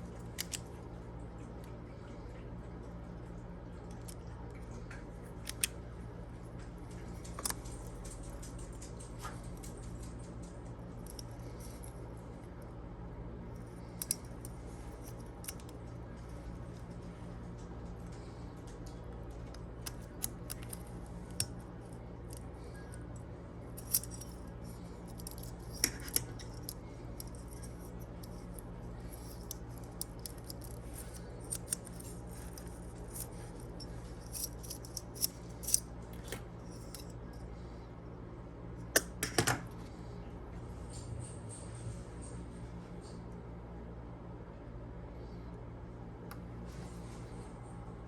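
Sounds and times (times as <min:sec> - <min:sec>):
steady low hum: 0:00.0 - 0:48.0
clicks of small parts and tools: 0:05.3 - 0:05.8.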